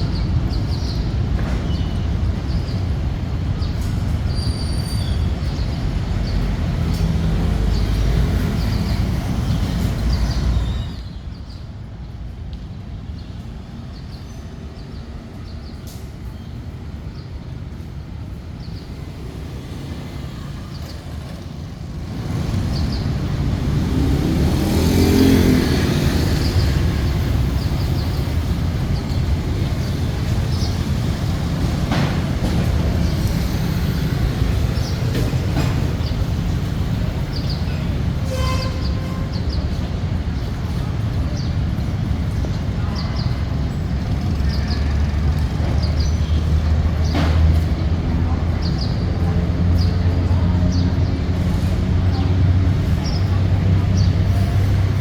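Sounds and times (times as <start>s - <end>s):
road traffic rumble: 0.0s - 55.0s
vehicle passing: 19.0s - 37.4s.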